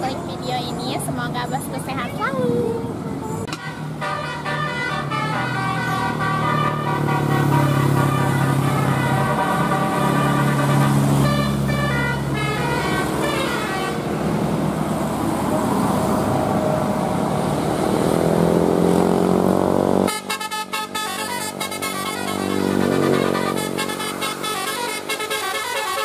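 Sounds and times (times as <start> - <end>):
bus engine revving: 2.2 - 26.0
multi-tone musical air horn: 3.5 - 14.2, 20.1 - 26.0.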